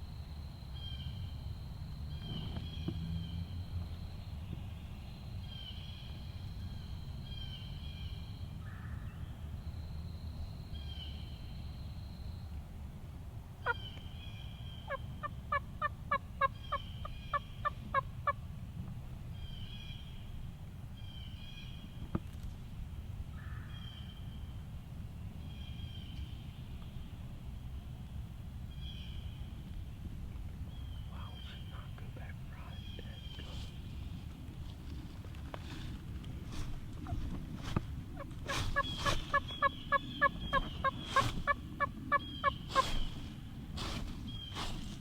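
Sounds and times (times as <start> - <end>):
songbirds singing: 0.0 - 12.7, 13.6 - 18.4, 19.0 - 35.0, 35.6 - 45.0
turkey yelps: 38.2 - 43.0.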